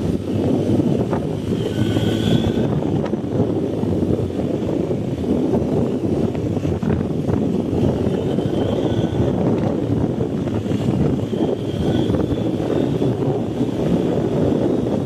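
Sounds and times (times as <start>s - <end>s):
motorcycle engine running: 0.0s - 15.0s
wind rush on microphone: 0.0s - 15.0s
high-pitched squeal: 1.4s - 3.0s, 7.7s - 9.4s.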